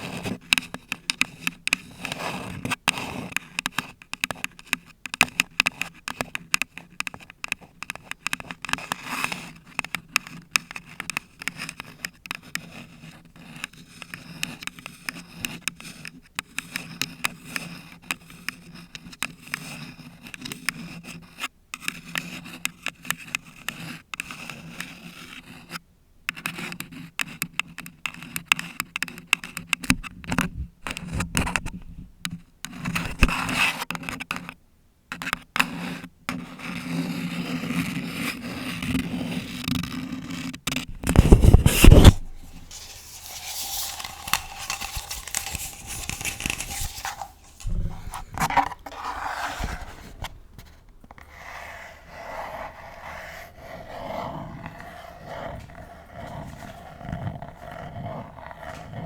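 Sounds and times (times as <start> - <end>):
nails scratching paper cup: 35.1 - 59.0.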